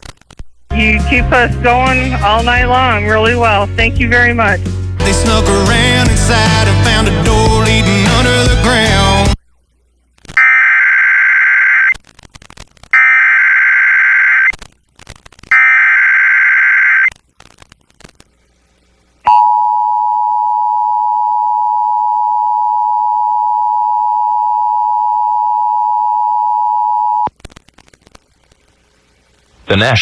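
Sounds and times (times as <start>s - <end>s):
buzzy digital data screeches: 10.4s - 12.0s, 13.0s - 14.5s, 15.5s - 17.1s.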